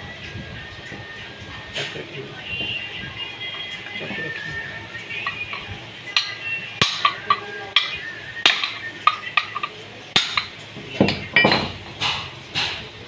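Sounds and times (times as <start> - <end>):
metal-on-metal clinks: 5.1 - 12.3.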